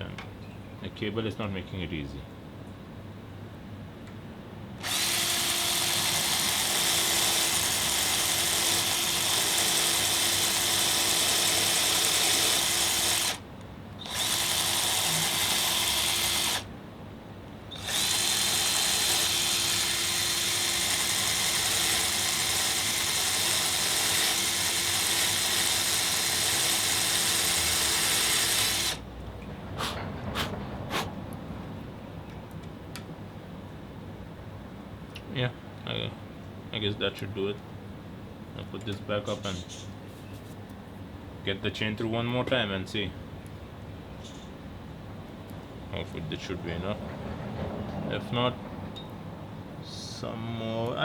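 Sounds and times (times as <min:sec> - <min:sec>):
electric drill grinding metal: 0:04.8 - 0:13.4, 0:14.0 - 0:16.7, 0:17.7 - 0:29.0.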